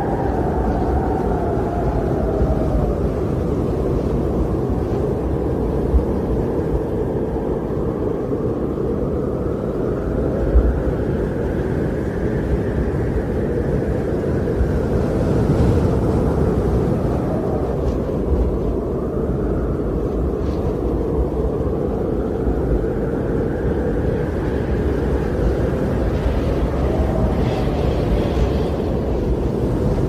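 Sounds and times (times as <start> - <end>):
strong wind blowing: 0.0 - 30.0.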